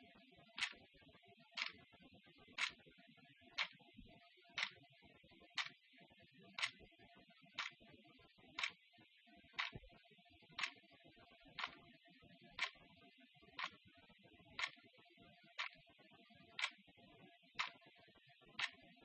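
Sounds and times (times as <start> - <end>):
clock ticking: 0.6 - 0.8, 6.6 - 6.8, 9.6 - 9.8, 11.6 - 11.8, 14.6 - 14.8, 16.6 - 16.8.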